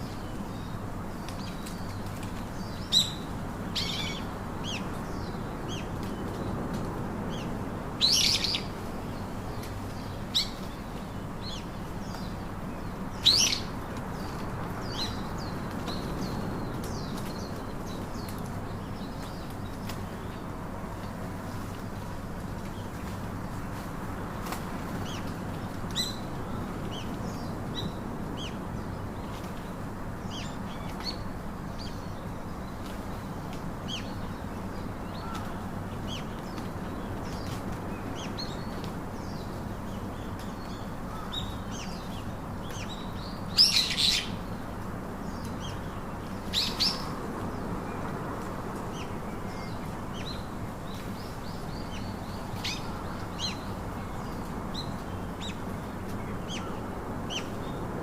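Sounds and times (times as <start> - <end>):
small birds chirping: 0.0 - 6.6, 7.3 - 23.7, 24.4 - 58.0
low background hum: 0.0 - 58.0.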